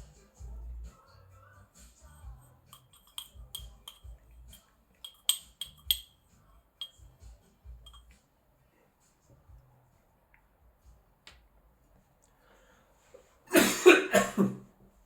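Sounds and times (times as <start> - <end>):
utensils clinking: 2.7 - 6.2, 6.8 - 7.1.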